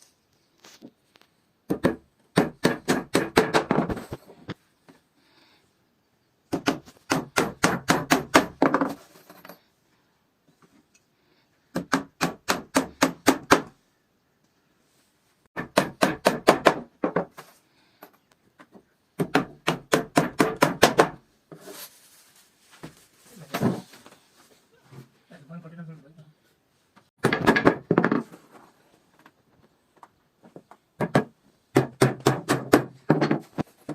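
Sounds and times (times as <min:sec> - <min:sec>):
hammer striking wood: 0:01.7 - 0:03.9, 0:06.5 - 0:08.8, 0:11.7 - 0:13.7, 0:15.6 - 0:17.3, 0:19.2 - 0:21.2, 0:27.2 - 0:28.2, 0:31.0 - 0:33.5.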